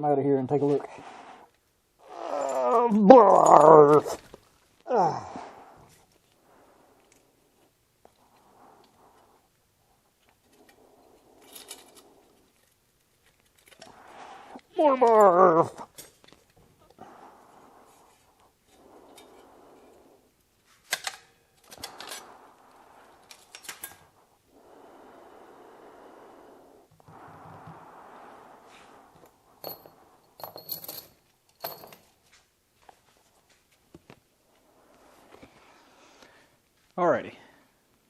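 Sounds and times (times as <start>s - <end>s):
soft hissing: 0.5s - 2.8s, 3.8s - 20.9s, 21.6s - 31.9s, 33.0s - 38.0s
metal parts and tools clinking: 10.2s - 14.0s, 15.0s - 16.9s, 20.7s - 22.5s, 23.1s - 24.2s, 29.2s - 32.4s.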